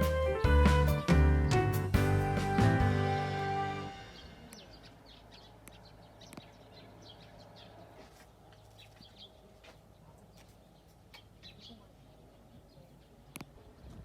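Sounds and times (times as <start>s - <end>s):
background music: 0.0s - 4.5s
small birds chirping: 4.0s - 14.0s.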